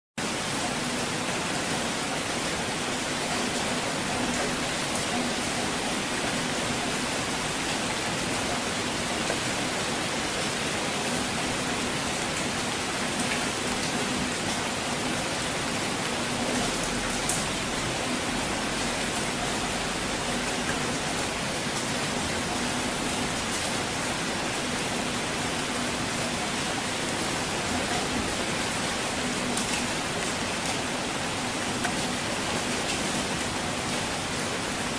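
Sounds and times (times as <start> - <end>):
steady rain falling: 0.2 - 34.9.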